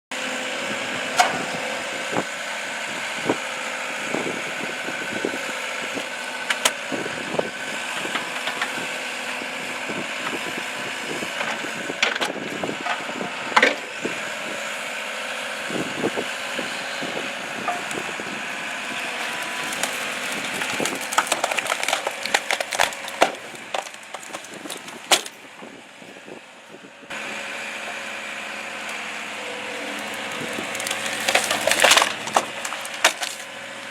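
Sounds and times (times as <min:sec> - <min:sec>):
excavator running: 0:00.1 - 0:33.9
material cracking and snapping: 0:19.2 - 0:25.3, 0:30.0 - 0:33.4.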